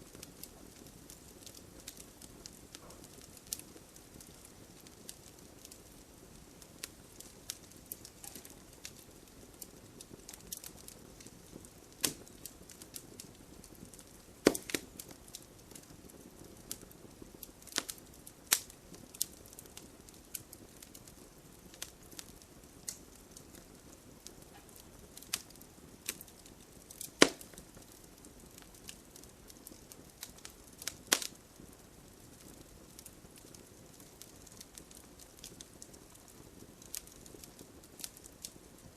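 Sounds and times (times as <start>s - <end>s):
fire hissing: 0.0s - 38.8s
wood fire crackling and popping: 0.0s - 38.9s.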